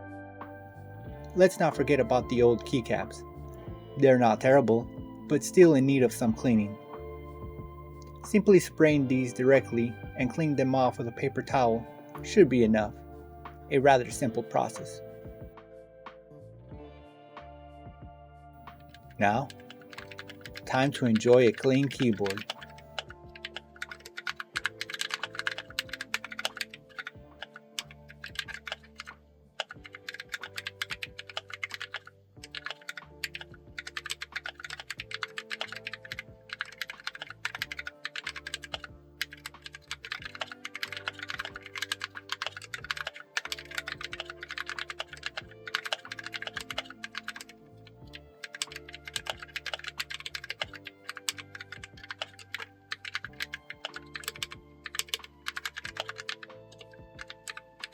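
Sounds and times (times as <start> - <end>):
background music: 0.0 - 57.9
mechanical keyboard typing: 18.6 - 57.9.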